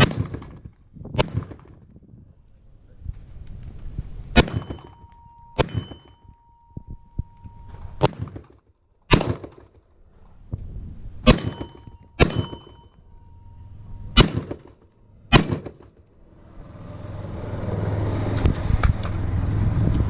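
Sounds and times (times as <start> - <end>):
rifle shots: 0.0 - 1.8, 4.3 - 6.2, 8.0 - 9.9, 11.2 - 12.9, 14.1 - 16.0
faint ringing tone: 4.6 - 8.0, 11.5 - 14.2, 14.8 - 15.3.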